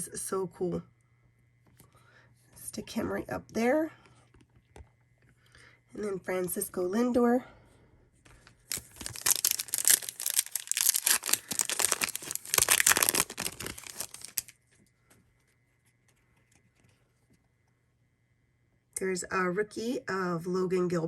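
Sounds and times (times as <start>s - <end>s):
foil wrapper tearing and crinkling: 8.7s - 14.6s.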